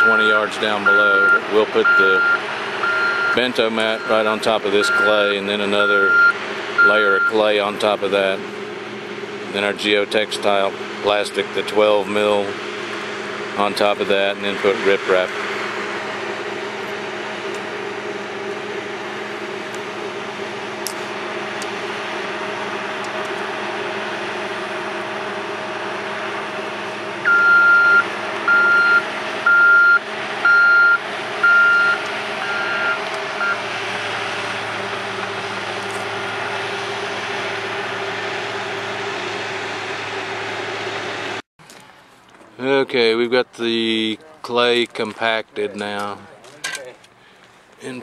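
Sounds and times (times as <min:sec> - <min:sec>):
reversing alarm beeps: 0:00.0 - 0:07.4, 0:27.3 - 0:33.6
heavy machine engine running: 0:00.0 - 0:48.0.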